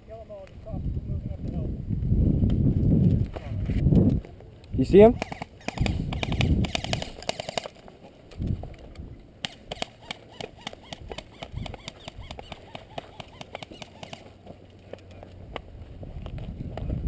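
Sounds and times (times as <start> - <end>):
footsteps crunching on gravel: 11.8 - 17.0.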